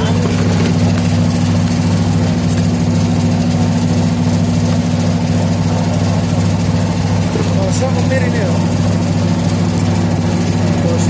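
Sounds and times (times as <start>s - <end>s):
nut cracking machine humming: 0.0s - 11.0s.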